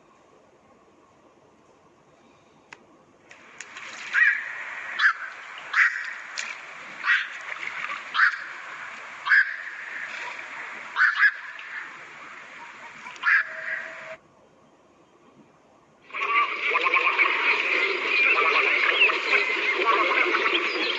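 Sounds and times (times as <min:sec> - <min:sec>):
steady background hiss: 0:00.0 - 0:19.7
bird calling harshly: 0:04.0 - 0:06.4, 0:07.0 - 0:14.2.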